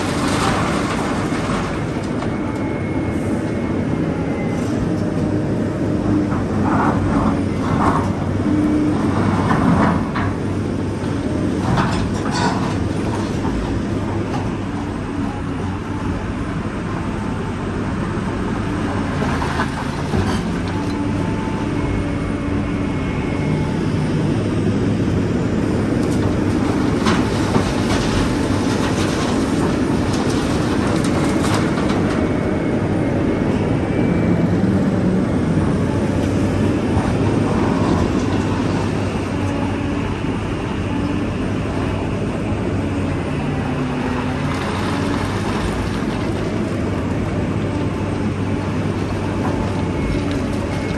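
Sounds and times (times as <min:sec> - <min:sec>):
diesel earthmoving machinery: 0:00.0 - 0:50.9.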